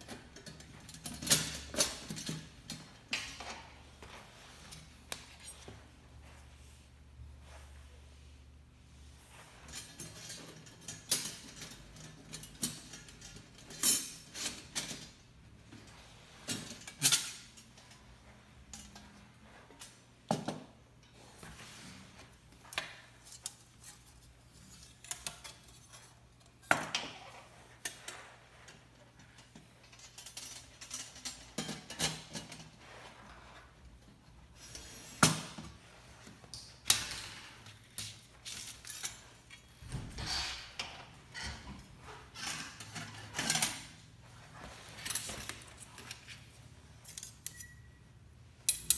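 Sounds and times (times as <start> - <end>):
metal parts clinking: 0.0 - 3.2, 9.7 - 15.2, 16.4 - 18.1, 27.8 - 32.8, 36.9 - 44.0, 44.7 - 47.9.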